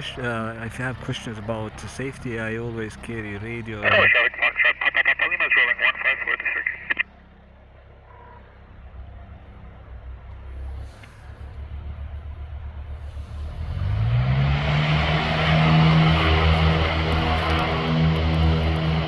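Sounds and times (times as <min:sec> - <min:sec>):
small airplane engine throttling up: 0:09.5 - 0:19.0.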